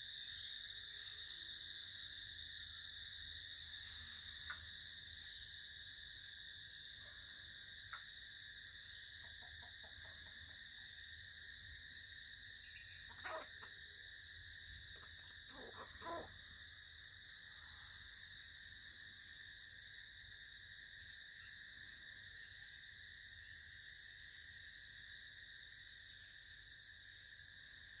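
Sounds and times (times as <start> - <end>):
pulsing insect chorus: 0.0 - 28.0
short animal calls: 13.1 - 13.8, 15.5 - 16.4.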